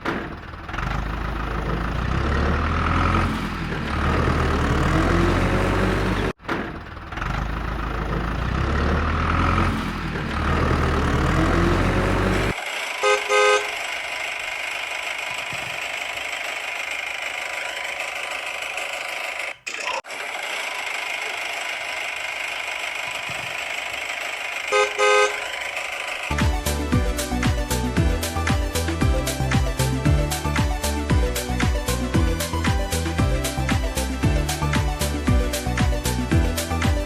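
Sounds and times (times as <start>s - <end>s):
low engine rumble: 0.0s - 12.6s
vehicle horn tooting: 12.8s - 14.0s, 24.6s - 25.8s
music: 26.3s - 37.0s.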